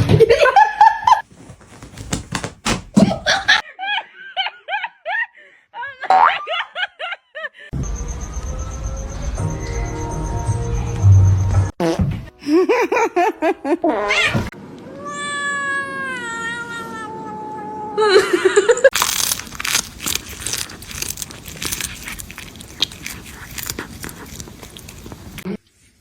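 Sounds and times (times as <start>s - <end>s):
cat meowing and yowling: 14.1s - 18.0s.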